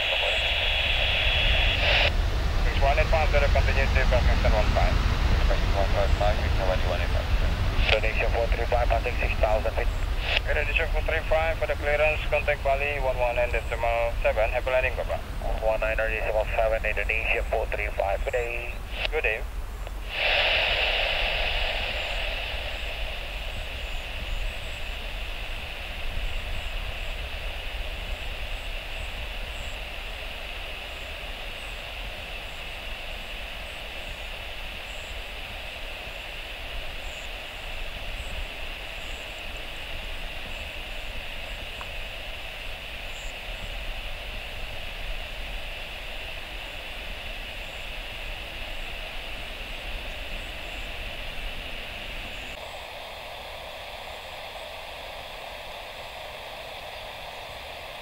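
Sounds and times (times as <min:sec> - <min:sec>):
wind rumble on microphone: 0:00.0 - 0:52.8
steady high hiss: 0:00.0 - 0:58.0.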